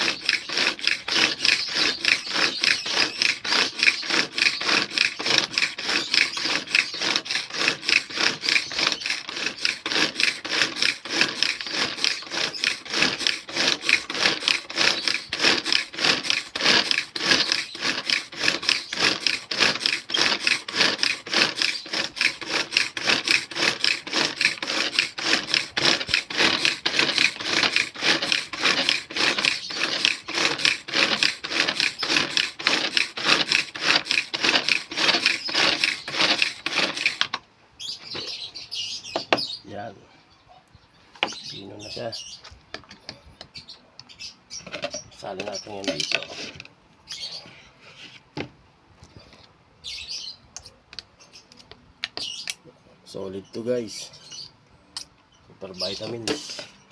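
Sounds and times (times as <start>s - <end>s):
rapid rasping strokes: 0.0s - 37.4s, 44.8s - 48.2s, 55.6s - 56.8s.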